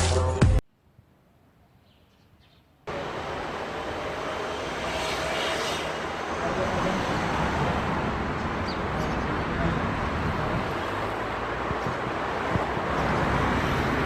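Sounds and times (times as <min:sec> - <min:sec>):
street and traffic hum: 0:02.9 - 0:14.0.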